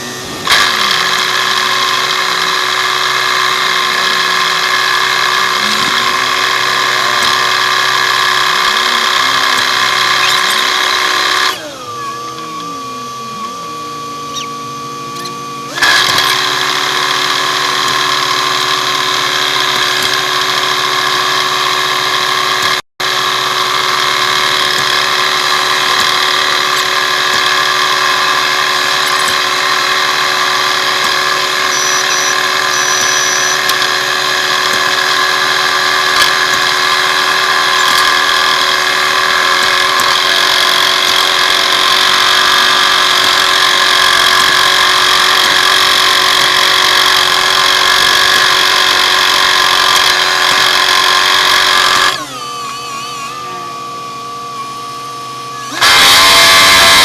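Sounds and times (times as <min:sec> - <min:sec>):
diesel engines droning: 0:00.0 - 0:19.7
high even whine: 0:00.0 - 0:22.0, 0:23.4 - 0:49.5.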